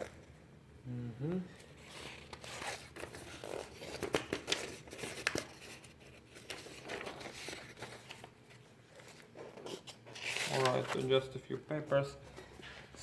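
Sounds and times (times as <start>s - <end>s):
paper rustling: 1.6s - 13.0s.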